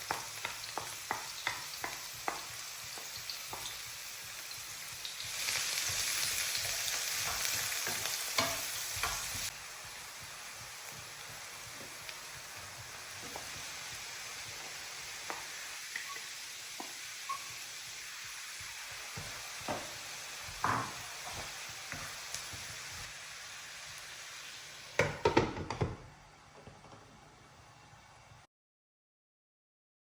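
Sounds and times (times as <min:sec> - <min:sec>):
food sizzling in a frying pan: 0:00.0 - 0:28.5
utensil scraping and tapping pan: 0:05.8 - 0:10.0
loud clattering against pan: 0:25.0 - 0:26.1.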